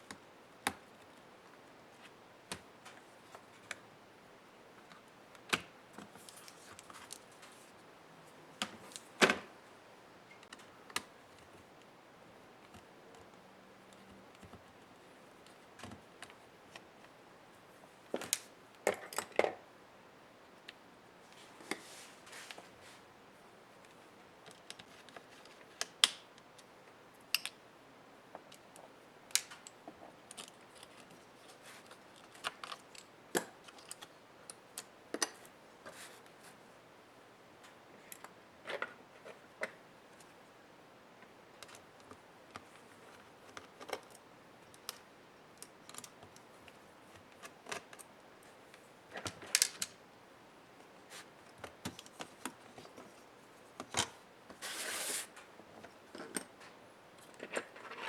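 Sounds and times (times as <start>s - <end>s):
small clicks and taps of tools: 27.3s - 27.6s.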